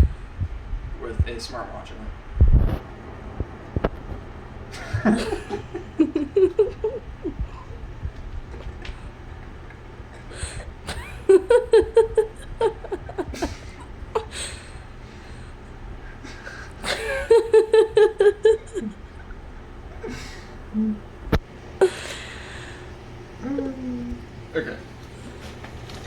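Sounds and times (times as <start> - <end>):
person laughing: 4.7 - 8.0, 10.2 - 14.8, 16.2 - 19.2.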